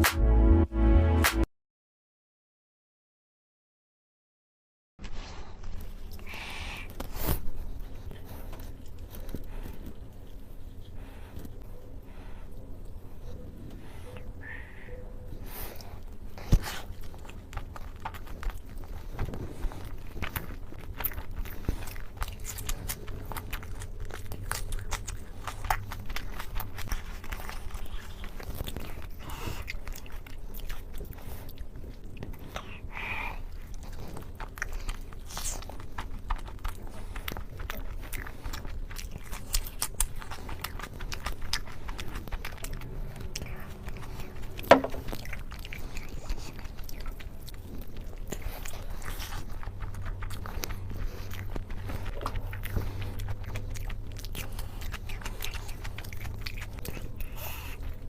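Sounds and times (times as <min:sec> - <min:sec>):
person chewing: 0:05.1 - 0:58.0
steady low hum: 0:05.1 - 0:58.0.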